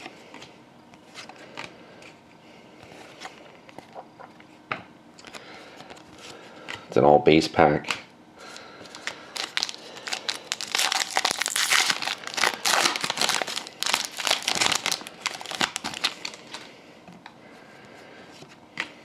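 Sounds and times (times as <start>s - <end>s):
card pack wrapper crinkling and tearing: 8.5s - 16.7s.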